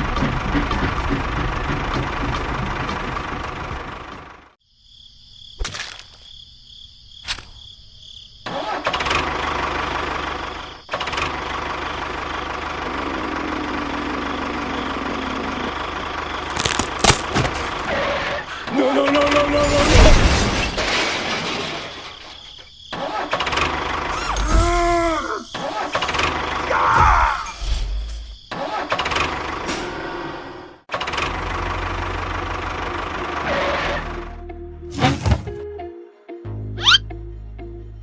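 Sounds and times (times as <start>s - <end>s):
small vehicle engine running: 0.0s - 4.6s, 8.7s - 19.3s, 23.3s - 24.3s, 30.9s - 34.4s.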